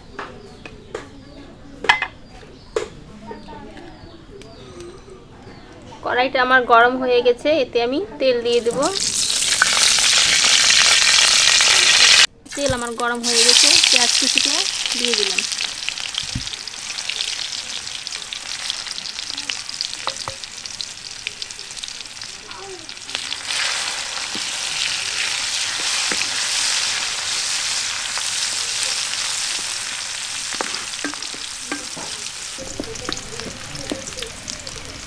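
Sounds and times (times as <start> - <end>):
onion sizzling in hot oil: 8.5 - 35.0
spatula scraping a pan: 22.9 - 34.2.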